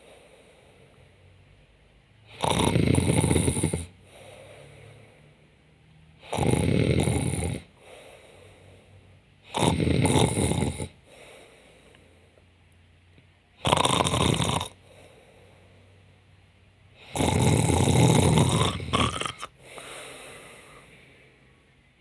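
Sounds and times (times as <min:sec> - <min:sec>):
soft breathing: 0:00.0 - 0:01.8, 0:03.9 - 0:05.9, 0:07.7 - 0:09.4, 0:10.9 - 0:12.6, 0:14.8 - 0:17.0, 0:19.4 - 0:21.9
woman fake snoring: 0:02.3 - 0:04.0, 0:06.2 - 0:07.7, 0:09.5 - 0:11.0, 0:13.6 - 0:14.8, 0:17.0 - 0:19.9.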